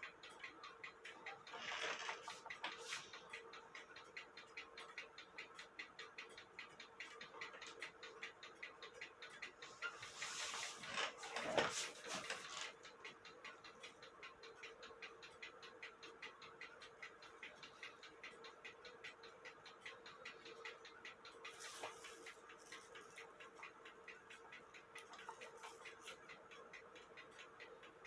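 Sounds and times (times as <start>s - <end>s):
cuckoo clock ticking: 0.0s - 28.0s.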